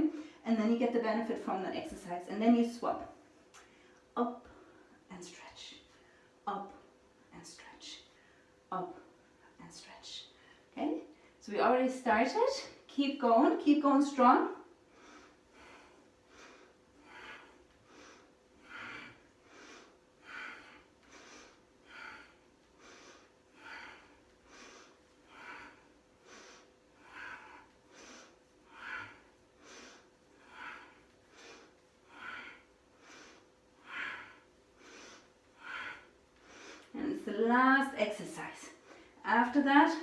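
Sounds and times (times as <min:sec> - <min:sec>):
forceful rhythmic breathing: 0:14.6 - 0:40.0.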